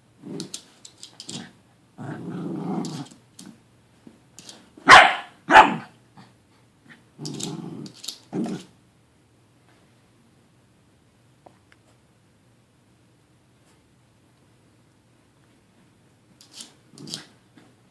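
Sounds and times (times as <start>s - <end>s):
dog growling: 1.3s - 3.1s, 7.2s - 8.7s
dog barking: 4.8s - 5.9s.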